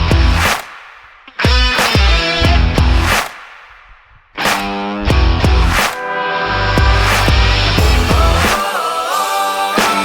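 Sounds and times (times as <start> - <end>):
rock music chords: 0.0 - 0.6, 1.2 - 3.3, 4.4 - 10.0
drum hits: 0.0 - 3.9.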